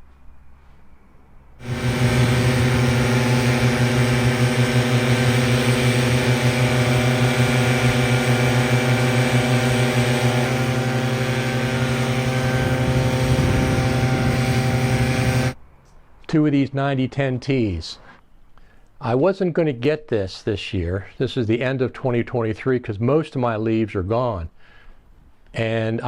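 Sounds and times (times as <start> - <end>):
leaf blower engine running: 1.6 - 15.6.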